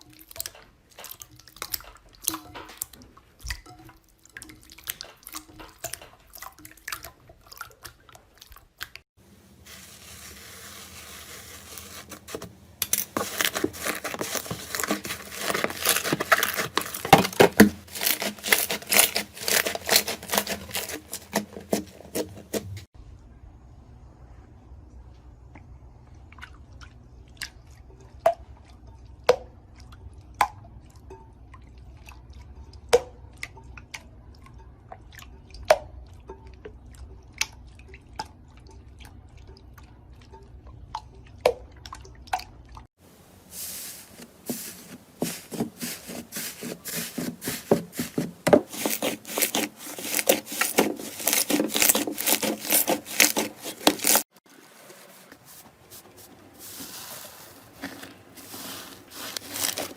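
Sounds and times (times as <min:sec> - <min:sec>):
slime squelching: 0:00.0 - 0:22.9, 0:43.3 - 0:59.9.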